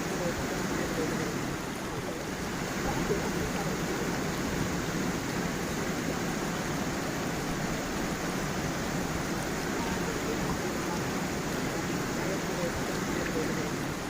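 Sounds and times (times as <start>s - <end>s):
stream and waterfall over stones: 0.0s - 14.0s.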